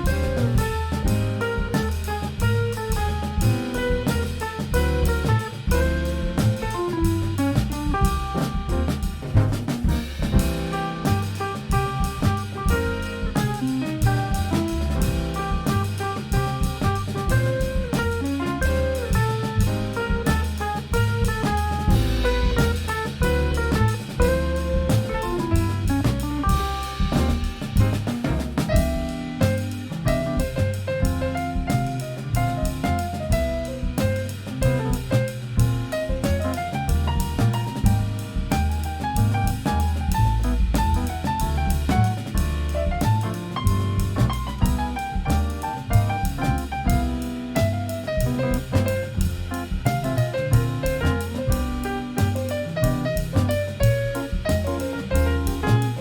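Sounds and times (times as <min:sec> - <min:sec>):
drum kit keeping time: 0:00.0 - 0:56.0
instrumental jazz band: 0:00.0 - 0:56.0
walking bass line: 0:00.0 - 0:56.0.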